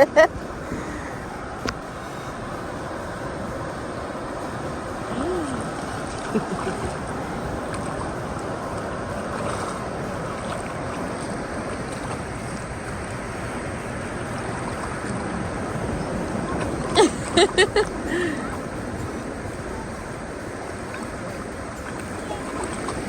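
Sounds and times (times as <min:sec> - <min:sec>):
ocean surf breaking: 0:00.0 - 0:23.0
wind on microphone: 0:00.0 - 0:23.0.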